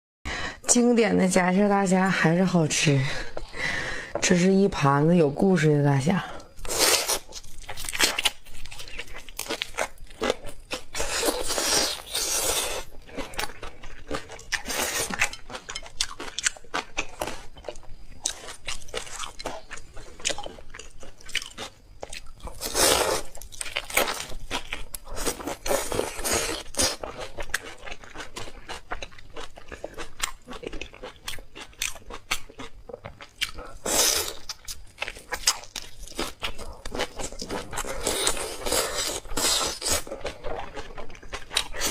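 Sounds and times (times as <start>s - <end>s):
crunching and chewing: 6.4s - 41.9s.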